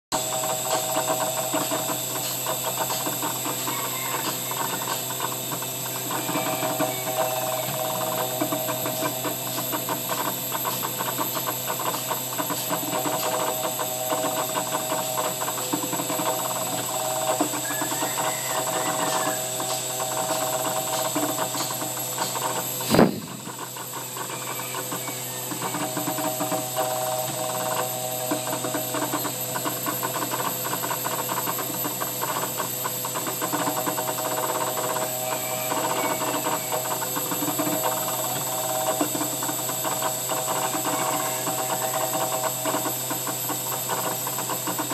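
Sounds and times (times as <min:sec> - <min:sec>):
cnc router spindle whine: 0:00.1 - 0:44.9
stepper motor tones: 0:00.2 - 0:44.9
sharp knock: 0:22.9 - 0:23.6.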